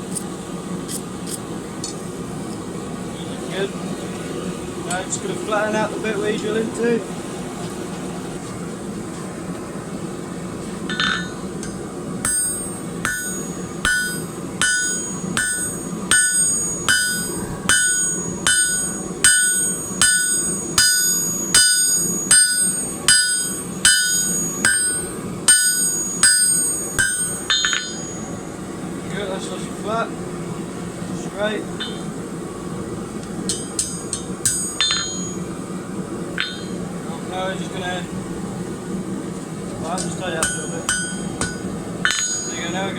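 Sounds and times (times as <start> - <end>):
hammer striking steel on anvil: 10.9 - 28.4, 33.5 - 35.4, 36.4 - 36.8, 40.0 - 42.8.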